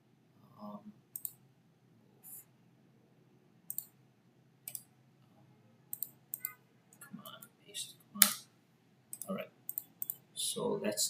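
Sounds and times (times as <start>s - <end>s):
mouse and keyboard clicks: 9.1s - 10.2s.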